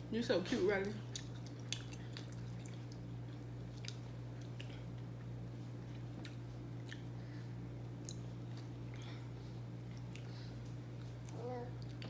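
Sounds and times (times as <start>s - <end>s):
steady low hum: 0.0s - 12.0s
person chewing food: 1.1s - 7.2s, 7.8s - 12.0s.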